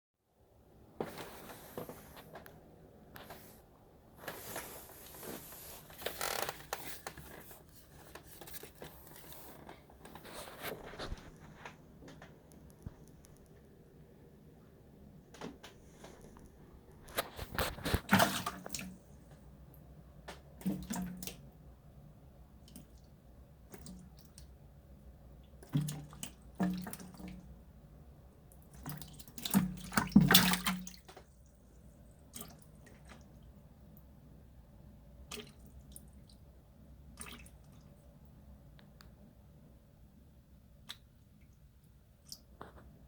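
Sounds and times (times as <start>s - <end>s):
water splashing and dripping: 20.3s - 21.5s, 25.5s - 27.4s, 28.6s - 31.3s, 35.3s - 36.4s, 37.1s - 37.9s.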